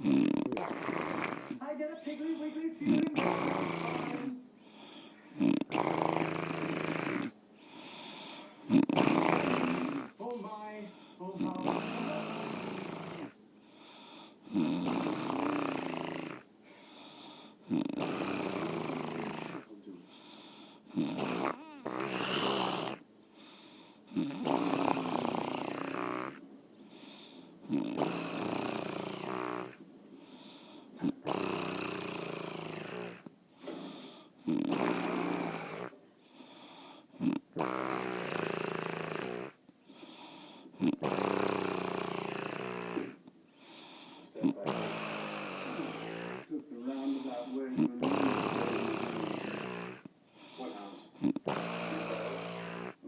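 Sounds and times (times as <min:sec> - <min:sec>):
quiet breathing: 0:00.0 - 0:05.7, 0:06.3 - 0:08.9, 0:09.8 - 0:14.6, 0:15.2 - 0:21.9, 0:22.9 - 0:27.7, 0:28.4 - 0:37.4, 0:38.0 - 0:53.0
woman snoring: 0:00.0 - 0:26.4, 0:27.0 - 0:53.0.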